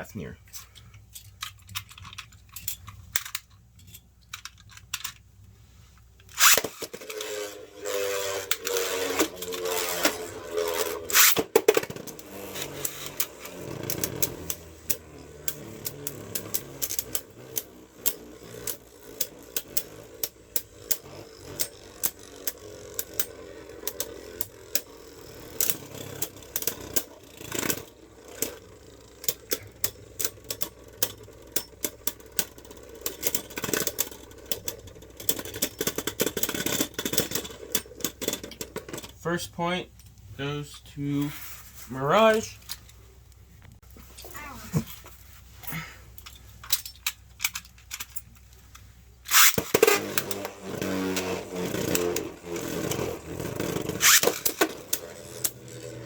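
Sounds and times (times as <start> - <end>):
spinning tops humming: 6.2 - 39.0, 49.3 - 56.0
spinning tops launched with burst: 6.3 - 32.3, 49.3 - 56.0
spinning tops clashing clicks: 6.3 - 39.1, 49.3 - 56.0.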